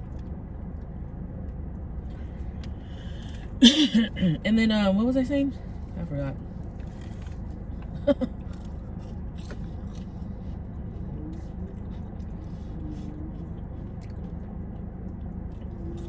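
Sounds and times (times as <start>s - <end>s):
steady low hum: 0.0s - 16.0s
close chewing with mouth sounds: 6.6s - 16.0s.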